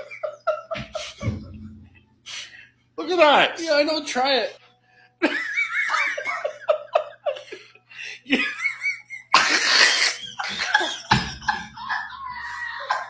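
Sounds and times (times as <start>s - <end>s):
people laughing and giggling: 0.0s - 1.8s, 5.2s - 13.0s.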